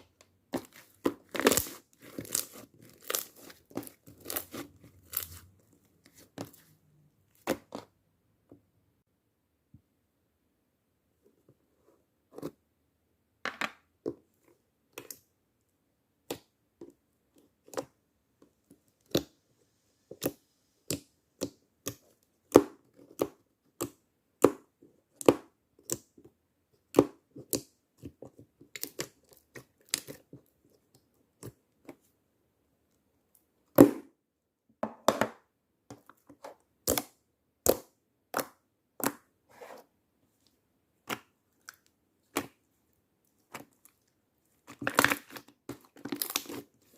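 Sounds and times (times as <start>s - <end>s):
slime popping and crackling: 0.8s - 5.4s, 44.8s - 46.6s.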